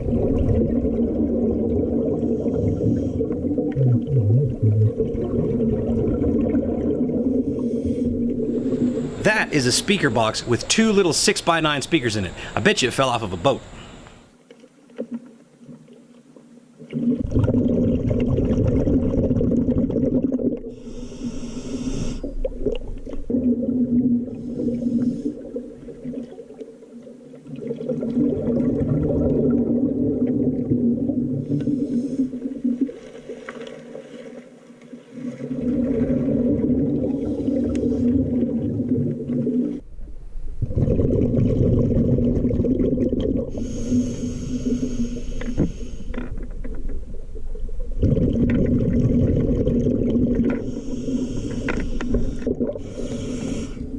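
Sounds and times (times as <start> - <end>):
exhaled bubbles rumbling underwater: 0.0 - 9.3, 16.8 - 33.8, 34.8 - 53.9
low hum: 7.4 - 14.3
short hisses: 11.4 - 12.7, 13.5 - 14.2.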